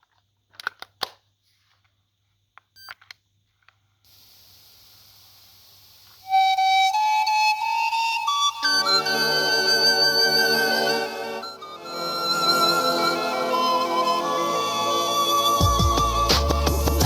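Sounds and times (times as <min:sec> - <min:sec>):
tape hiss: 0:03.6 - 0:17.0
flute-like melody: 0:06.2 - 0:17.0.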